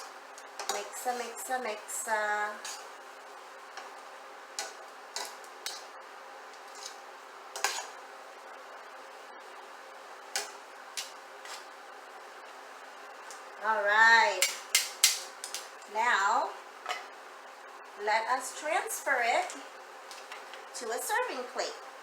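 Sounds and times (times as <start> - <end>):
faint steady hum: 0.0 - 22.0
utensils clinking against a pan: 14.4 - 15.7.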